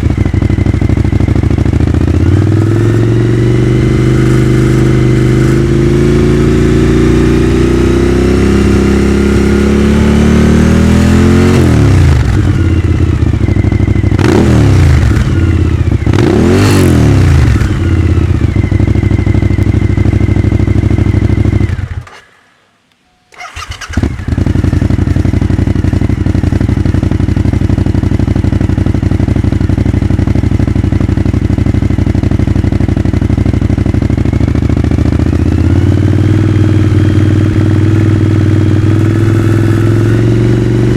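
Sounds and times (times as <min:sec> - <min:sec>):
motorcycle engine revving: 0:00.0 - 0:22.4, 0:23.3 - 0:40.9.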